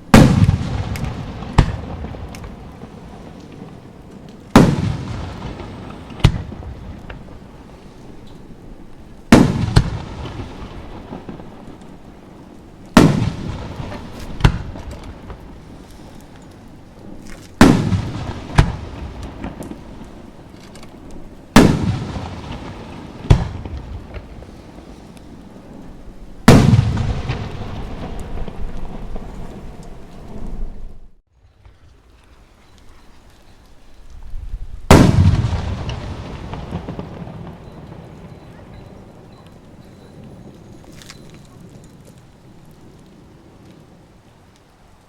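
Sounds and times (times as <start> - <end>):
firework booms with echo: 0.0 - 8.2, 9.3 - 16.2, 17.1 - 20.6, 21.5 - 25.6, 26.4 - 31.0, 34.9 - 39.8
sharp firework bang: 0.1 - 2.6, 4.6 - 7.2, 9.3 - 10.6, 34.9 - 37.6.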